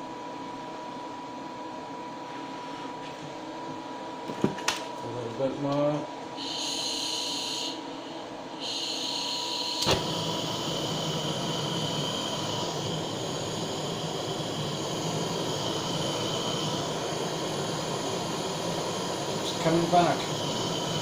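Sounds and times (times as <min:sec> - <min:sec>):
blowtorch hissing: 0:06.4 - 0:07.8, 0:08.6 - 0:21.0
blowtorch click: 0:09.8 - 0:21.0.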